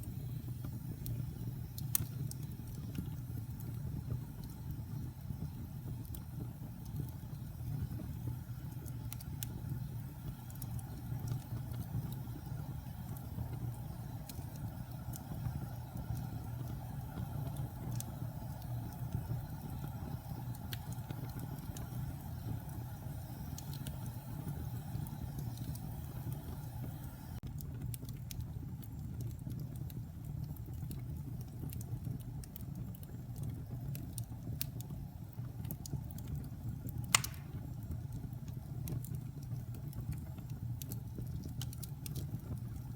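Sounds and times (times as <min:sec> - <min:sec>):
fire crackling: 0:00.0 - 0:42.9
fire flames rumbling: 0:00.0 - 0:42.9
sharp pop of fire: 0:37.1 - 0:37.8.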